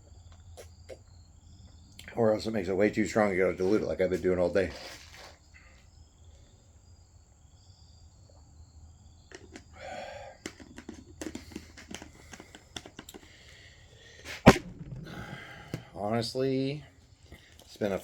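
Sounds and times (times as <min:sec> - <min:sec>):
faint crickets chirping: 0:00.0 - 0:18.0
handling clicks and crinkling: 0:10.4 - 0:13.3
sharp knock: 0:14.5 - 0:15.8.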